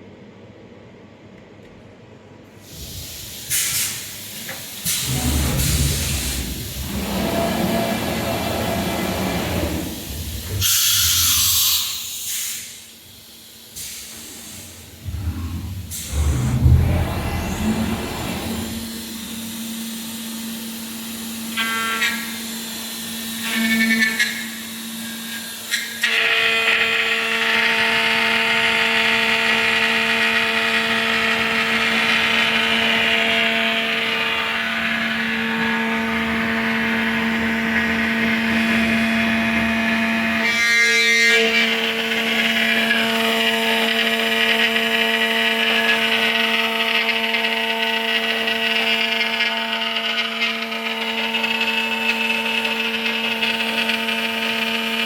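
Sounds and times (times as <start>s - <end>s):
short mechanical sounds: 2.6s - 12.8s
machine spindle humming: 3.9s - 11.3s, 14.3s - 40.7s
cutter milling plastic: 4.8s - 12.0s, 15.0s - 19.5s, 21.5s - 55.0s.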